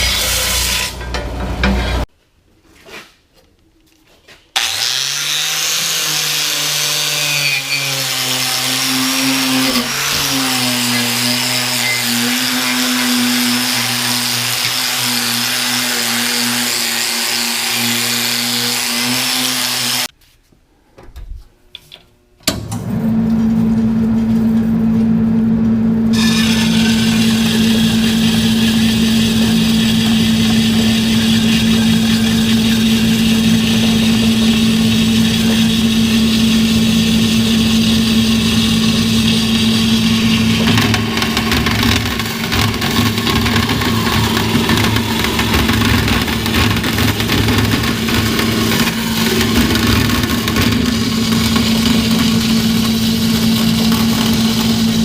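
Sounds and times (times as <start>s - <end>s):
electric power tool running: 4.6s - 20.1s, 26.1s - 55.0s.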